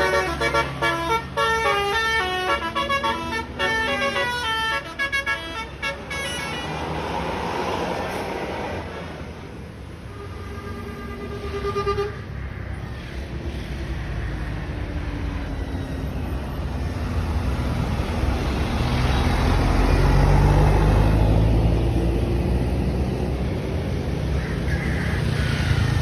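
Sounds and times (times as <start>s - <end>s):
bus horn: 0.0s - 7.1s, 9.9s - 12.3s
bus engine rumbling: 0.0s - 26.0s.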